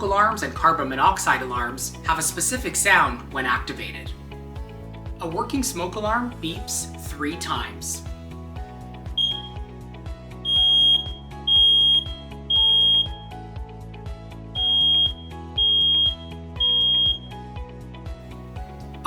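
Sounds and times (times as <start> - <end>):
background music: 0.0 - 19.0
smoke alarm beeping: 9.2 - 9.7, 10.4 - 13.2, 14.6 - 17.3.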